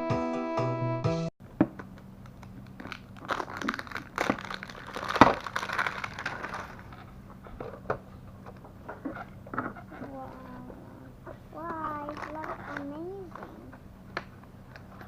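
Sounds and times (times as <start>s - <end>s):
packaging crinkling and rustling: 1.8s - 7.9s, 11.7s - 13.5s, 14.2s - 15.0s.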